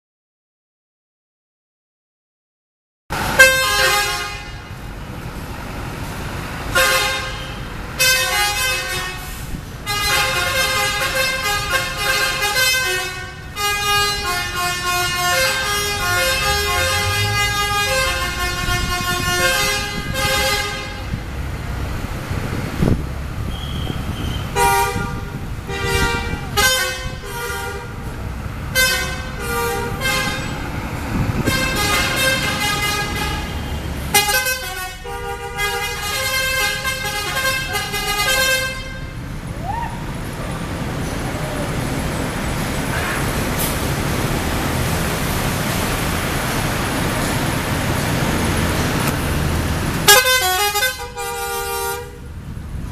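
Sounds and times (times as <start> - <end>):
engine rumble: 3.1 - 52.9
street noise: 3.1 - 52.9
multi-tone musical air horn: 3.3 - 4.7, 6.7 - 21.2, 24.5 - 28.1, 28.7 - 30.6, 31.4 - 39.2, 50.1 - 52.3.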